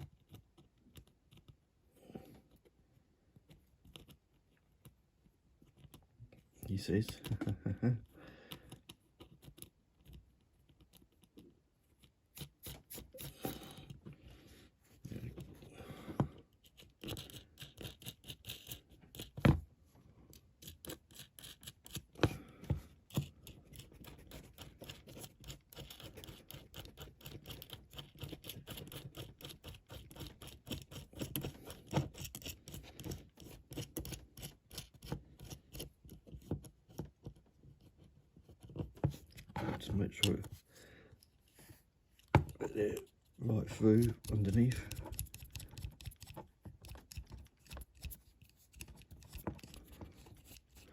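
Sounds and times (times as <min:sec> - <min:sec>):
small metal parts scratching and clicking: 0:16.6 - 0:19.4, 0:20.3 - 0:22.1, 0:23.1 - 0:36.2, 0:42.6 - 0:50.9.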